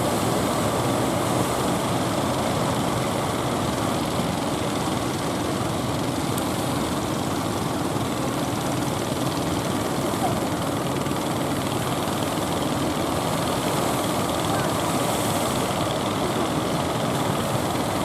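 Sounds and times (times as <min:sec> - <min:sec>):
boat engines running: 0:00.0 - 0:18.0.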